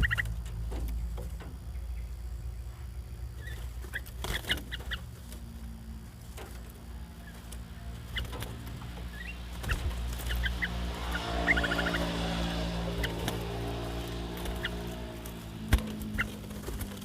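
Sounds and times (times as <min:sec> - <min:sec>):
bulbuls chirping: 0:00.0 - 0:17.0
steady low hum: 0:00.0 - 0:17.0.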